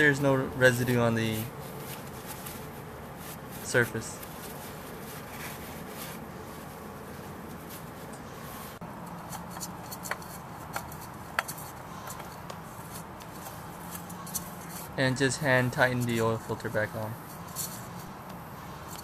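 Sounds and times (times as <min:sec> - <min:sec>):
faint hum: 0:00.0 - 0:19.0
hands handling parts clicking: 0:09.0 - 0:15.0.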